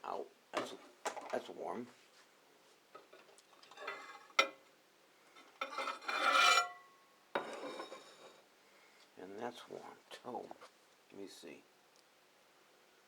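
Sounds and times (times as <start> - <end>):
utensil clinking on a dish: 3.0 - 4.6
utensil scraping a dish: 3.6 - 4.6, 5.4 - 6.8, 7.4 - 8.4.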